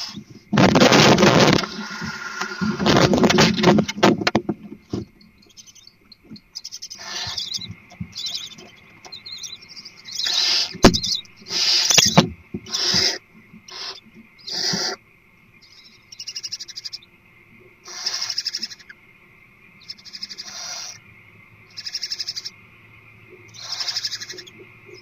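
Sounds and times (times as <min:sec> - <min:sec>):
owl raspy hissing screeches: 0:00.0 - 0:03.5, 0:06.8 - 0:07.6, 0:10.0 - 0:15.0, 0:17.8 - 0:18.9, 0:19.8 - 0:21.0, 0:21.7 - 0:22.5, 0:23.5 - 0:24.4
owls scuffling: 0:00.0 - 0:15.0
scratching: 0:00.0 - 0:15.0.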